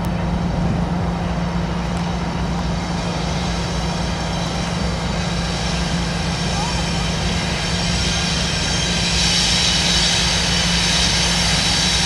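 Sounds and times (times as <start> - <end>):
locomotive engine drone: 0.0 - 12.0.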